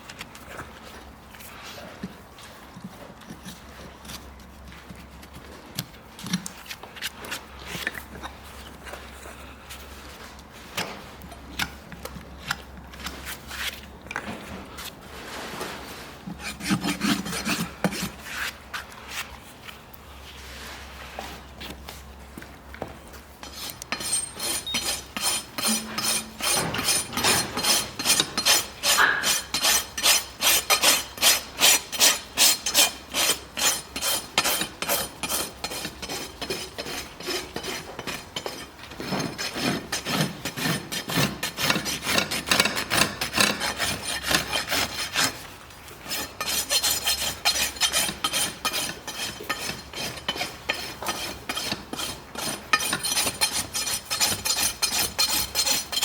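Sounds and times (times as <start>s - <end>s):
hoof rasp filing: 16.4s - 18.6s, 23.4s - 45.4s, 46.0s - 56.0s.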